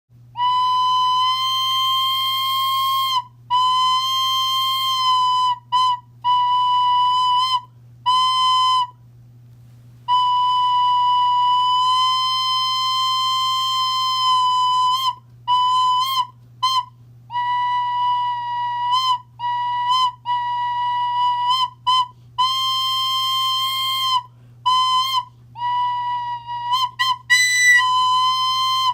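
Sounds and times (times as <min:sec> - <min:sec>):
faint low hum: 0:00.2 - 0:28.9
whistle blasts: 0:00.3 - 0:09.0, 0:10.1 - 0:28.9.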